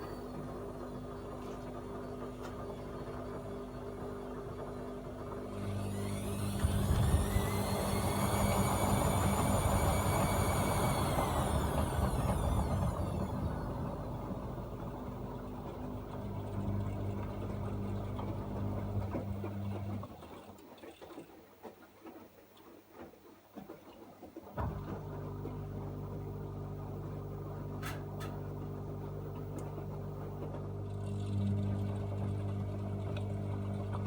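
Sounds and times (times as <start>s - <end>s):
washing machine motor whining: 3.0s - 20.6s, 24.6s - 34.0s
low steady hum: 24.6s - 34.0s.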